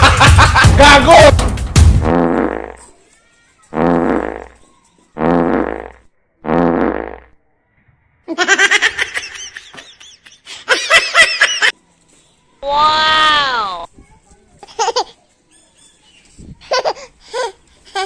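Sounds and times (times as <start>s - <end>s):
fake fart noises: 1.9s - 3.0s, 3.7s - 4.6s, 5.2s - 7.4s.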